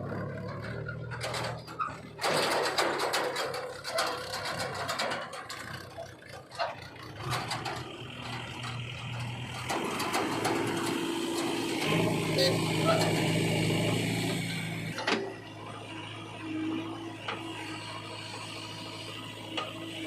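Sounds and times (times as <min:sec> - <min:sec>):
metallic clanking and rattling: 0:00.3 - 0:15.5
machine engine running: 0:07.2 - 0:20.0.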